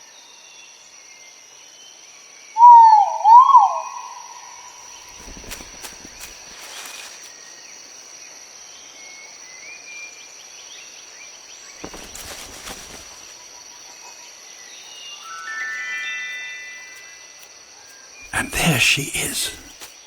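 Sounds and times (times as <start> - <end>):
rustling crackle: 5.0 - 7.4, 11.8 - 13.4
soft chime-like music: 15.4 - 17.3.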